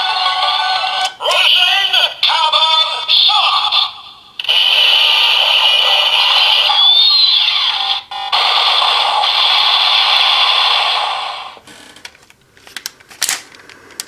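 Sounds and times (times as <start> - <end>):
toy electronic sound effect: 4.4 - 11.6.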